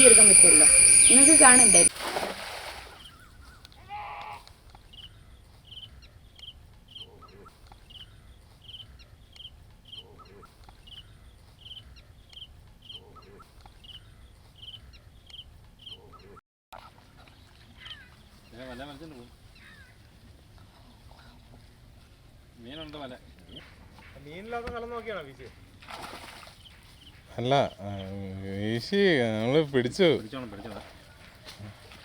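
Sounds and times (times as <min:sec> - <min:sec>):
lower bird call: 0:00.0 - 0:01.9.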